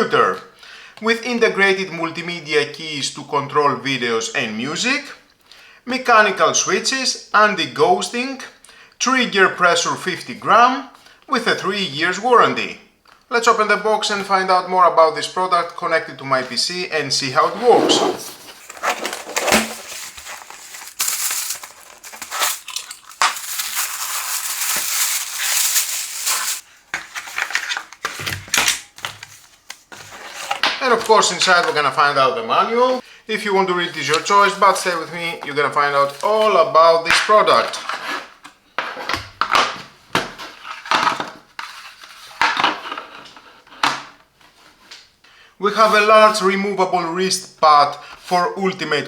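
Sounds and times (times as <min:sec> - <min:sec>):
cardboard and plastic rustling: 0:17.4 - 0:31.9, 0:39.7 - 0:43.2.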